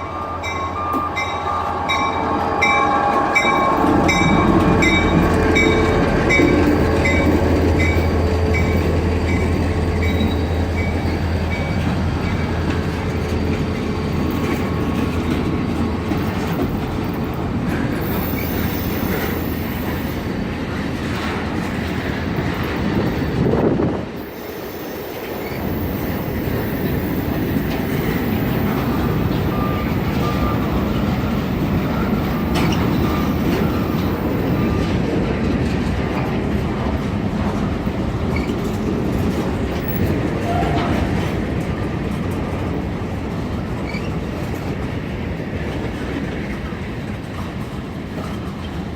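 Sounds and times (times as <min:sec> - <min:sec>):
locomotive engine drone: 0:00.0 - 0:22.8
train wheels rumbling on rail: 0:00.0 - 0:48.9
wheel squeals: 0:24.2 - 0:35.0, 0:43.8 - 0:44.3
wheels clicking over rail joints: 0:26.5 - 0:48.9.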